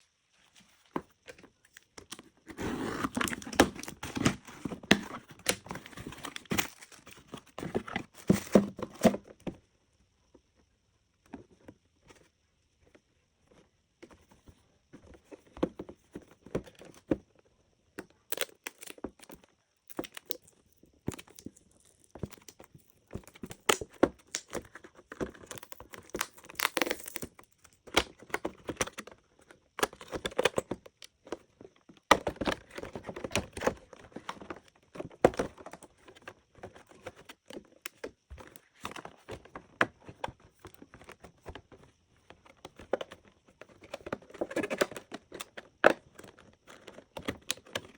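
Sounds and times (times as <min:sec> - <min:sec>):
wrapping crinkling and tearing: 0:25.4 - 0:27.3.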